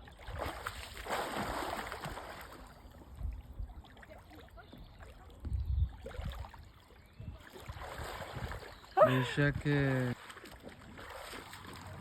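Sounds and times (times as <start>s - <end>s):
running water: 0.0s - 12.0s
wind buffeting microphone: 4.8s - 9.9s.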